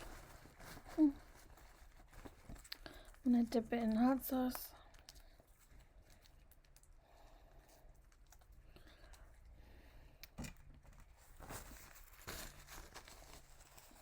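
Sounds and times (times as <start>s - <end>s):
faint clicks and taps: 2.2s - 7.0s.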